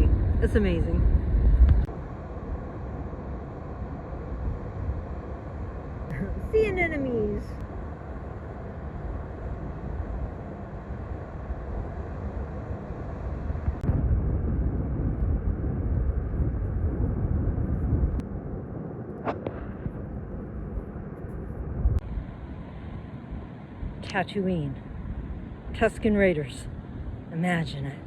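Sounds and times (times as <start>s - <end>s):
wind: 0.0s - 28.0s.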